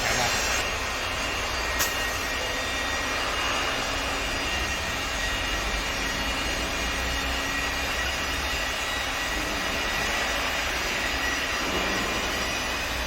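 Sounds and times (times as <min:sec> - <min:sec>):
rushing machine drone: 0:00.0 - 0:13.0.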